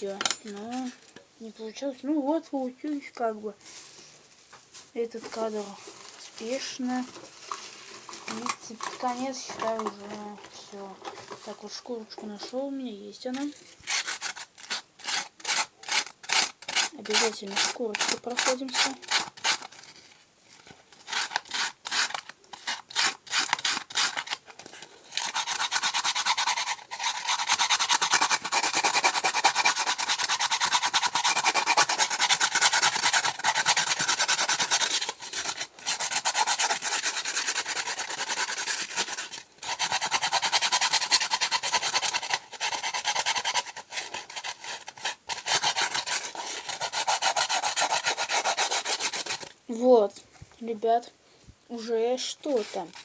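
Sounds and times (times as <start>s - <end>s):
sandpaper rubbing on foam: 13.8s - 19.8s, 21.1s - 24.4s, 25.1s - 49.5s, 52.4s - 53.0s.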